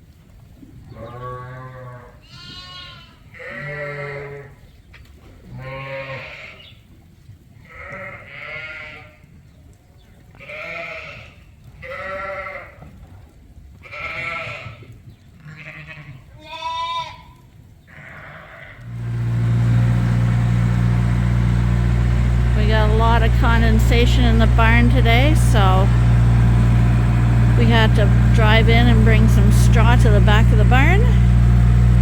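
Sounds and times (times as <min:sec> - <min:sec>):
sheep bleating: 0:01.1 - 0:04.5, 0:05.6 - 0:06.6, 0:07.6 - 0:09.2, 0:10.4 - 0:12.8, 0:13.8 - 0:14.8, 0:15.4 - 0:17.3.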